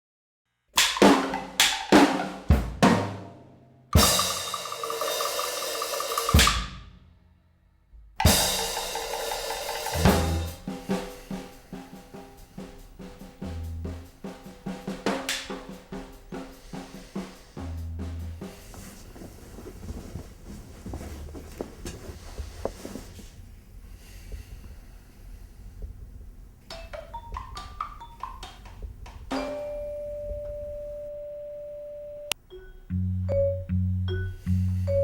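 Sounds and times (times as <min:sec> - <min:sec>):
drum hits: 0:00.8 - 0:03.4, 0:04.0 - 0:07.0, 0:08.0 - 0:19.3
kick drum and hi-hat beat: 0:04.0 - 0:06.8, 0:08.0 - 0:19.4
cymbal crashes: 0:04.0 - 0:06.9, 0:08.2 - 0:17.8.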